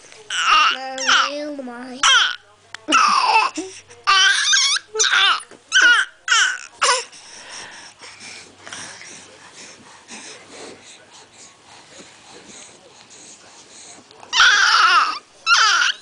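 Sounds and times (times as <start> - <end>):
soft breathy sounds: 6.8 - 14.3.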